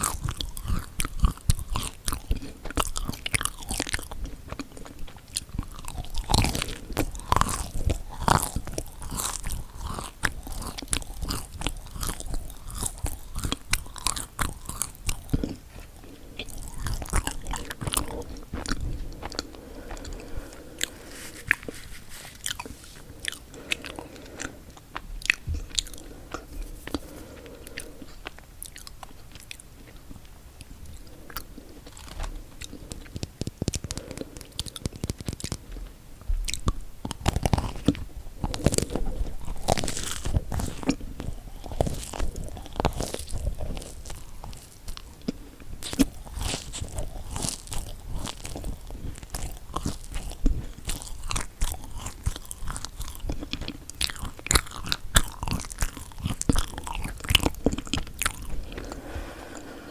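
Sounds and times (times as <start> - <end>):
crunching cookies: 0.0 - 59.9
sticky chewing: 0.0 - 59.9.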